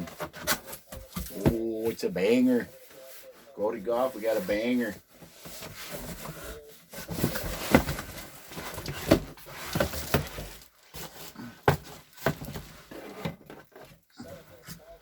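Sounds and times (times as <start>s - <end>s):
cardboard box scraping: 4.0s - 14.0s.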